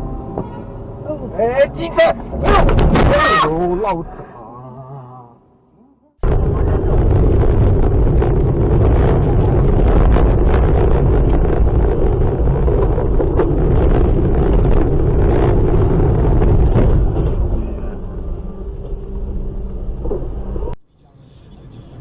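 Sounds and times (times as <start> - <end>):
rumbling vehicle noise: 0.0 - 22.0
wind buffeting microphone: 6.2 - 20.8.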